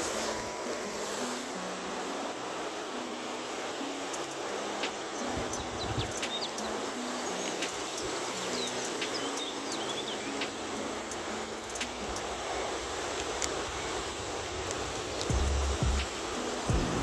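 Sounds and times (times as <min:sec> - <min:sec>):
steady rushing hiss: 0:00.0 - 0:17.0
faint bird chirps: 0:04.0 - 0:12.7
light ticks: 0:04.1 - 0:16.7.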